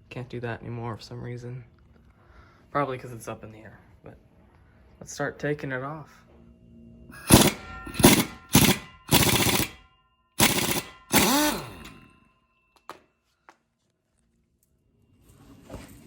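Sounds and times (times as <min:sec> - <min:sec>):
impact wrench rattling: 0:07.2 - 0:12.3.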